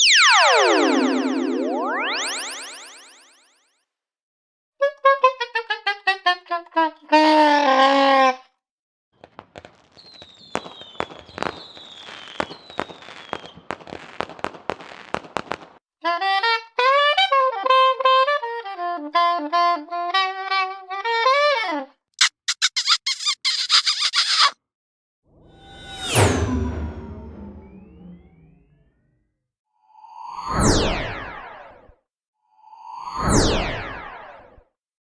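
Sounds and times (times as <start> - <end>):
crackling pops with falling whistles: 9.2 - 15.8.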